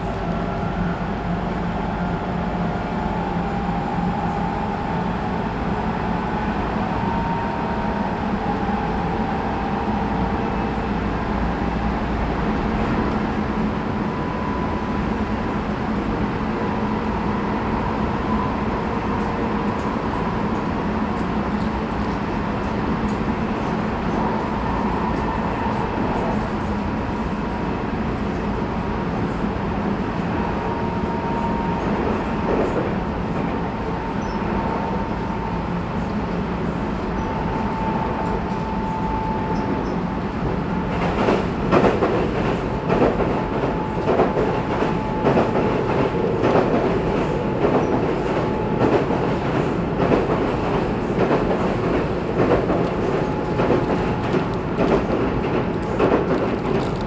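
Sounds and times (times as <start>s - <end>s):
electric train rumble and whine: 0.0s - 57.0s
wheels clacking over rail joints: 41.0s - 57.0s.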